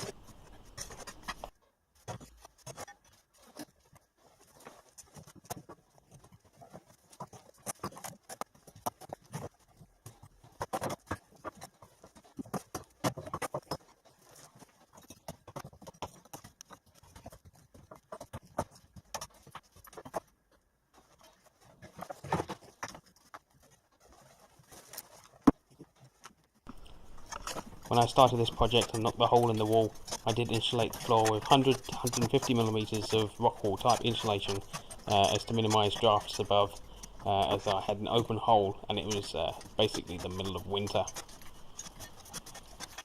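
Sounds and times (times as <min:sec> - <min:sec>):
stones and debris clattering: 0:26.7 - 0:43.0.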